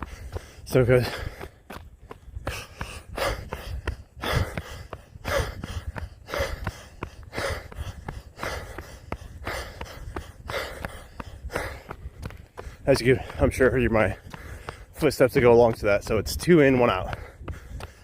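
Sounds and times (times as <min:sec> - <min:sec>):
runner breathing hard: 0:00.0 - 0:18.0
running footsteps: 0:00.0 - 0:18.0.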